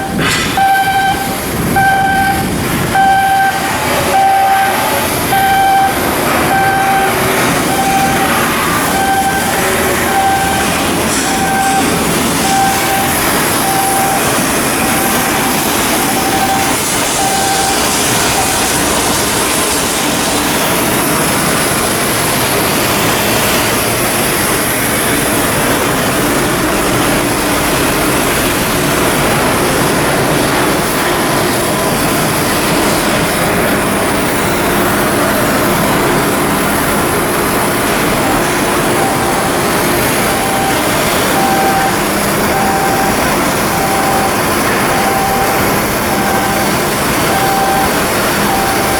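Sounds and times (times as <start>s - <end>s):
beeping tone: 0.0s - 19.1s, 38.1s - 48.9s
industrial machinery noise: 0.0s - 48.9s.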